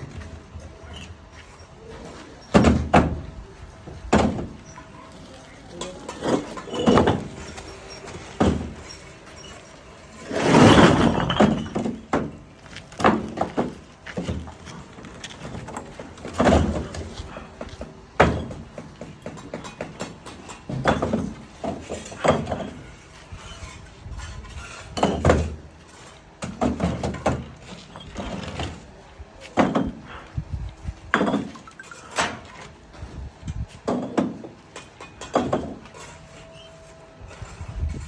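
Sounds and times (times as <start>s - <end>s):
bricks thudding and clacking: 3.9s - 4.6s, 6.1s - 9.5s, 10.2s - 22.9s, 24.9s - 25.6s, 26.4s - 28.8s, 29.5s - 30.2s, 31.1s - 32.4s.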